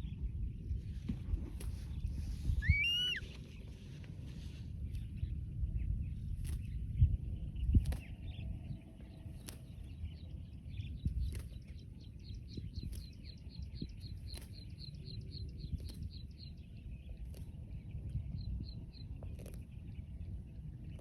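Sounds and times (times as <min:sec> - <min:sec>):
low rumble: 0:00.0 - 0:21.0
bird chirping rapidly: 0:02.6 - 0:03.2.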